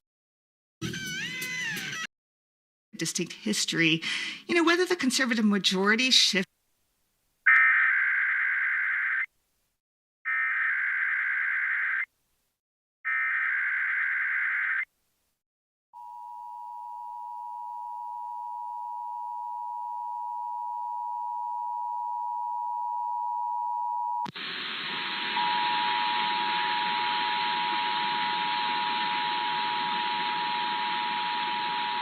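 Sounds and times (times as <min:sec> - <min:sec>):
loud hiss: 0:24.3 - 0:26.1.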